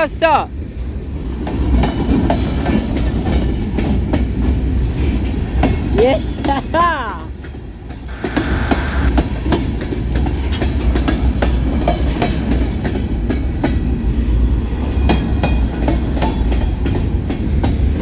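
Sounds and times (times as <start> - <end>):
low rumble of freight cars: 0.0 - 18.0
train wheels clicking over rail joints: 0.8 - 6.0, 9.2 - 14.2, 15.0 - 18.0.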